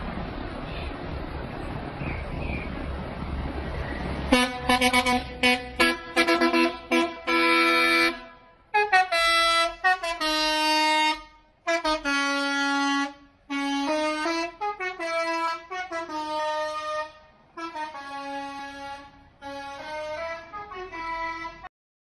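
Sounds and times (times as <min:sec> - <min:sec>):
horn playing a tune: 0:04.3 - 0:21.7.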